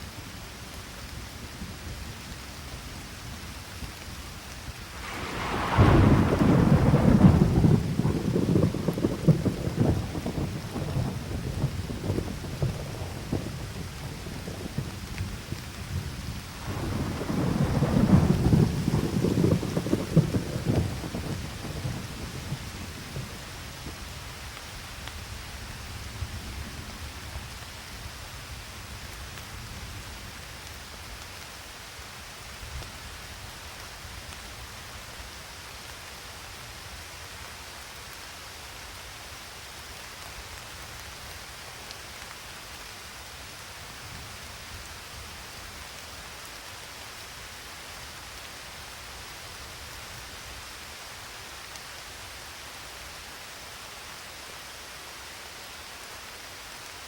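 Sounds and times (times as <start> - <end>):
steady rain falling: 0.0 - 57.0
low rumble of thunder: 4.7 - 30.5.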